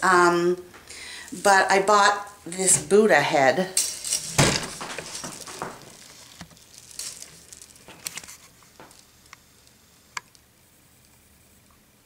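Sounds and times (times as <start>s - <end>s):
small objects tapping and clicking: 3.8s - 10.5s.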